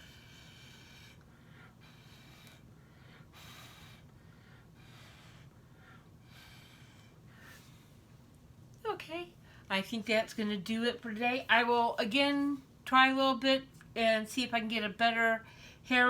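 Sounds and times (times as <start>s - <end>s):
short puffs of breath: 0.0s - 8.0s.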